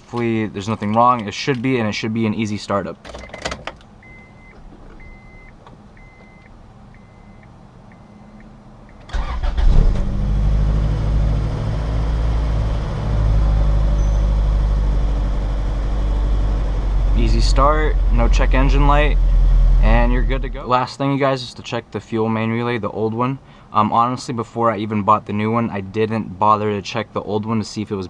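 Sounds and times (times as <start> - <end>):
car engine cranking and idling: 3.0 - 20.7.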